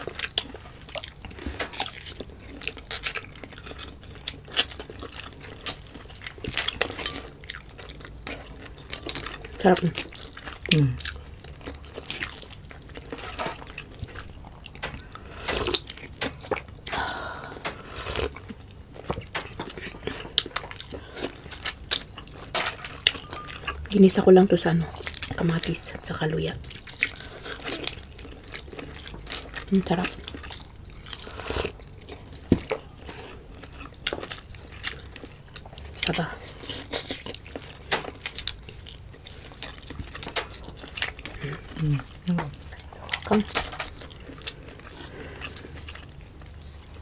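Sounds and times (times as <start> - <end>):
wet chewing with mouth clicks: 0.0 - 47.0
person humming mmm: 10.7 - 11.1, 41.4 - 42.5.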